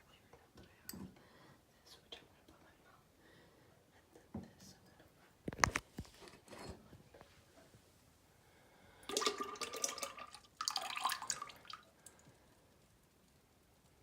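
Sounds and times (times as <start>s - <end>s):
water pouring: 9.1s - 12.2s.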